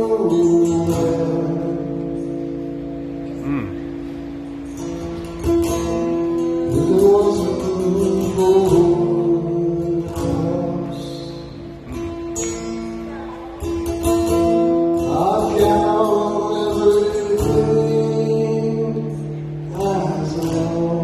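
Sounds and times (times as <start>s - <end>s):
person singing drawn-out notes: 3.3s - 4.0s.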